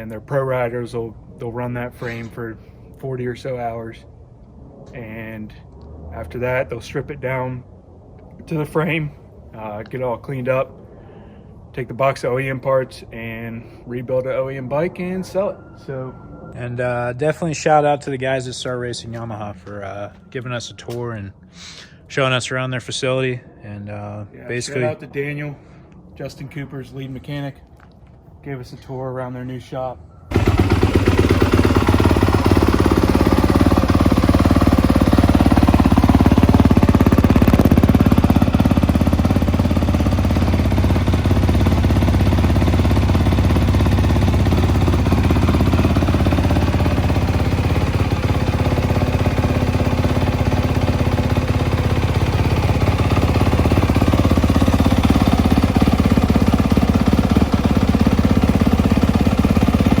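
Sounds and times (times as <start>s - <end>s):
dirt bike engine running: 30.3s - 60.0s.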